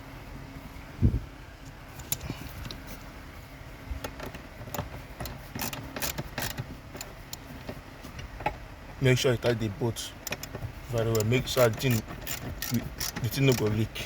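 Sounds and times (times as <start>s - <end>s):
hand tool clicking on metal: 4.7s - 7.4s, 10.2s - 13.8s.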